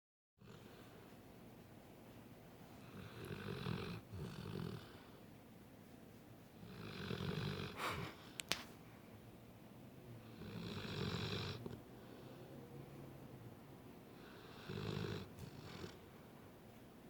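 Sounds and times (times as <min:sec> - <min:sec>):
rasping snores: 0:02.9 - 0:05.0, 0:06.6 - 0:07.8, 0:10.3 - 0:11.8, 0:14.3 - 0:16.0.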